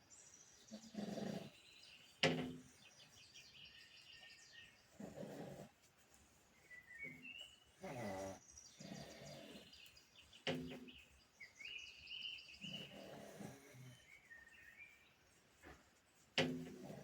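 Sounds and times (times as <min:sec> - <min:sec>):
dog snoring: 0:00.9 - 0:01.5, 0:05.0 - 0:05.7, 0:07.8 - 0:09.7, 0:12.8 - 0:14.0
birds chirping: 0:06.6 - 0:15.2.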